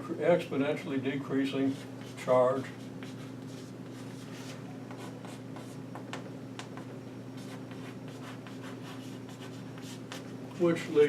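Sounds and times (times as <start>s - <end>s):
low electrical hum: 0.0s - 11.0s
chalk scratching and tapping on board: 3.0s - 3.7s, 4.4s - 10.7s.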